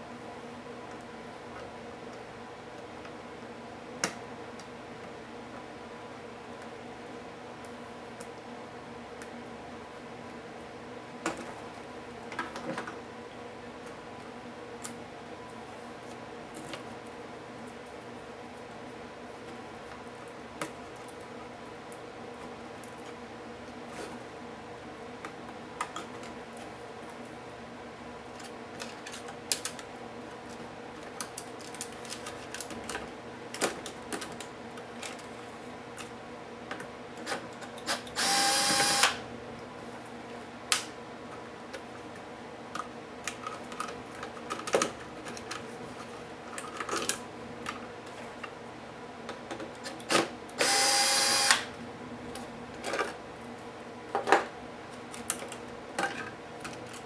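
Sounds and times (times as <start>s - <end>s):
electric screwdriver whirring: 38.2s - 39.2s, 50.6s - 51.7s.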